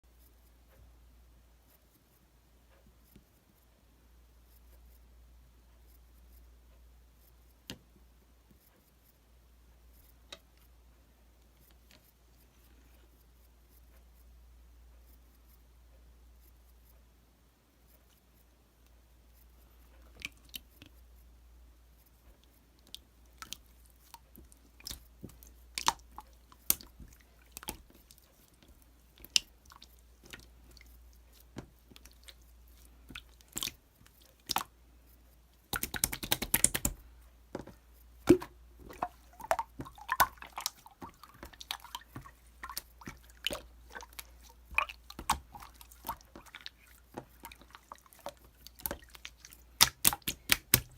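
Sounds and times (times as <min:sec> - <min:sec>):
slime squishing: 0:22.8 - 0:34.8, 0:35.6 - 0:50.9
slime clicking and popping: 0:29.2 - 0:30.5, 0:35.7 - 0:37.0, 0:38.3 - 0:50.9.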